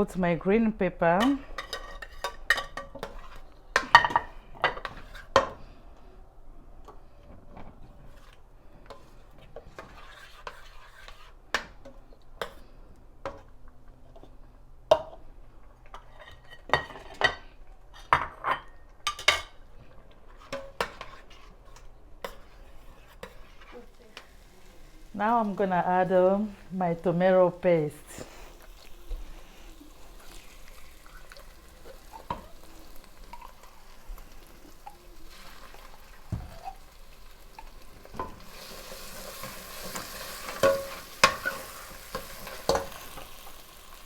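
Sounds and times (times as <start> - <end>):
utensils clinking against pot: 39.4 - 43.6.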